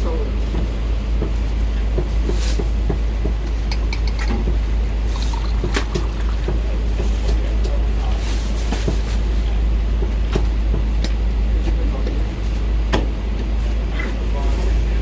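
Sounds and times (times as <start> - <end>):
steady low rumble: 14.2 - 15.0.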